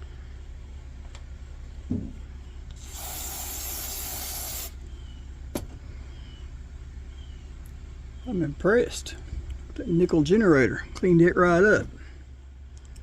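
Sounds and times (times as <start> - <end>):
spray hissing: 2.8 - 4.8.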